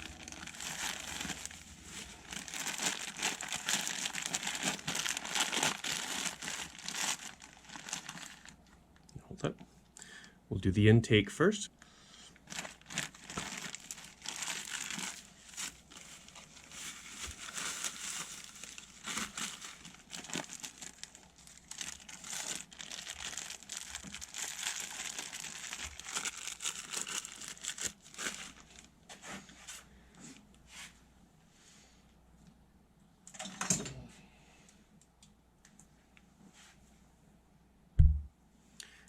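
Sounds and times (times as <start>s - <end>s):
plastic packaging crinkling: 0.0s - 8.7s, 12.4s - 28.9s.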